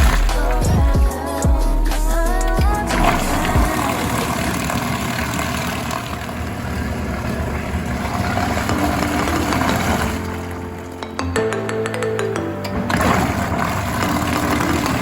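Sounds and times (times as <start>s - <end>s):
washing machine running: 0.0s - 1.1s, 2.6s - 11.0s, 12.8s - 15.0s.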